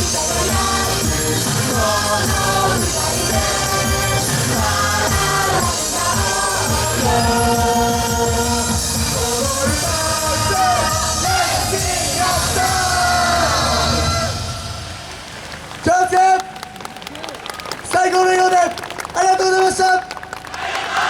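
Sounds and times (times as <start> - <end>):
steady driving beat: 0.0 - 13.3
song with sung vocals: 0.0 - 15.3.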